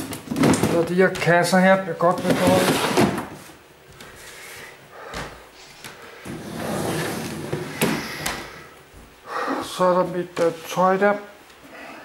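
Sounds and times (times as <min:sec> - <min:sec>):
boxes rustling: 0:00.0 - 0:08.7.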